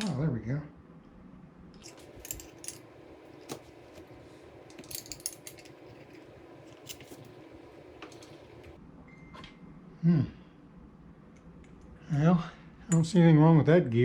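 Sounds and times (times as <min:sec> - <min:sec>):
small metal parts clicking: 0:01.8 - 0:08.8.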